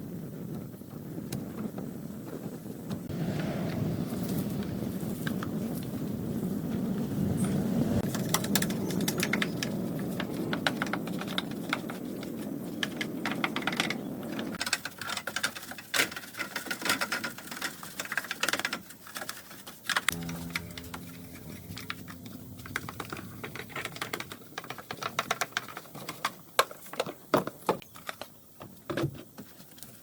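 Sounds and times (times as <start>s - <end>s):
low rumbling noise: 3.0s - 8.0s, 20.1s - 25.2s
short pitched hum: 20.1s - 24.6s.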